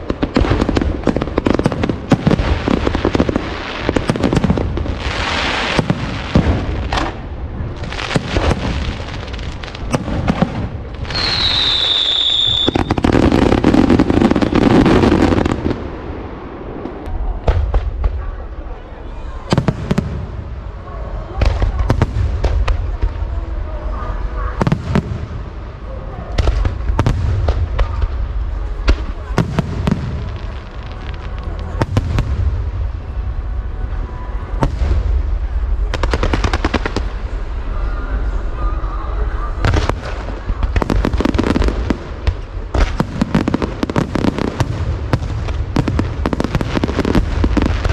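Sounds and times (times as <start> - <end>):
fireworks bursting: 0.0 - 47.9
whistling firework shell: 11.1 - 13.2.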